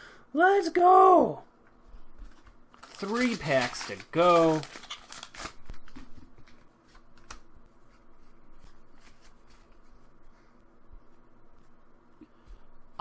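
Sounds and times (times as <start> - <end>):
trading cards rustling and clicking: 2.2 - 10.1.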